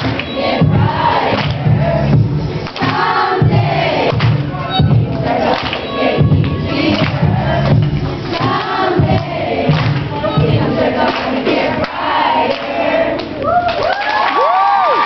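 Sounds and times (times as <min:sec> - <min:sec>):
children singing: 0:00.0 - 0:13.3
backing track music: 0:00.0 - 0:13.4
children cheering and whooping: 0:13.4 - 0:15.0.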